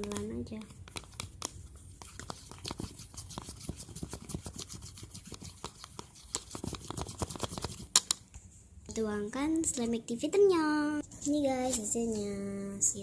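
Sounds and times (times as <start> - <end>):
knife stirring slime in cup: 0.0 - 8.0.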